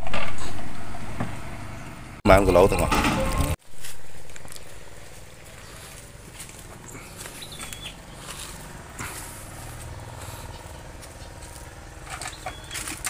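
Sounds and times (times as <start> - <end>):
small engine running: 4.6 - 13.0.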